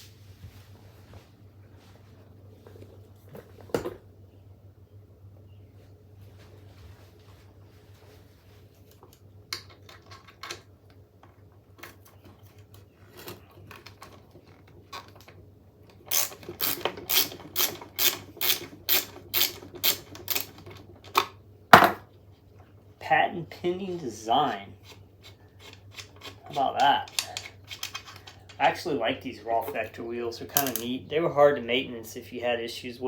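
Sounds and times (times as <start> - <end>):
sharp mechanical clicking: 16.1 - 20.6.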